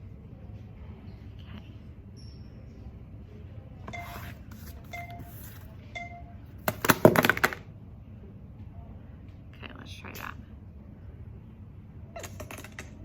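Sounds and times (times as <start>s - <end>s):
short beeps: 3.9s - 6.4s.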